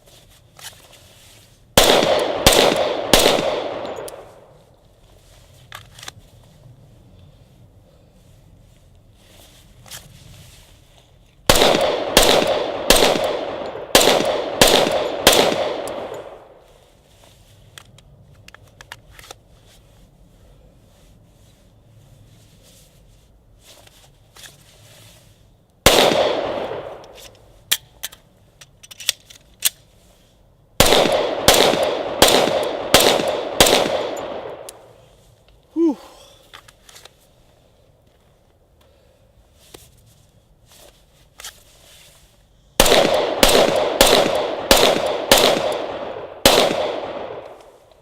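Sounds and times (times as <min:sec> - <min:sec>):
pistol shots echoing: 0:01.8 - 0:04.3, 0:11.5 - 0:16.4, 0:25.9 - 0:27.0, 0:30.8 - 0:34.7, 0:42.8 - 0:47.6.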